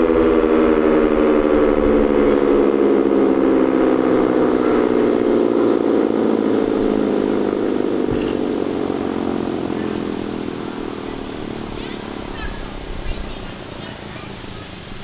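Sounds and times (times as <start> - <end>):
tornado siren winding down: 0.0 - 15.0.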